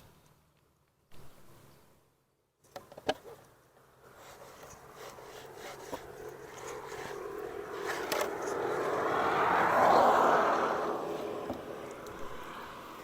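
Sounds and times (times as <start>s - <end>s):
vehicle passing by: 4.8s - 13.0s.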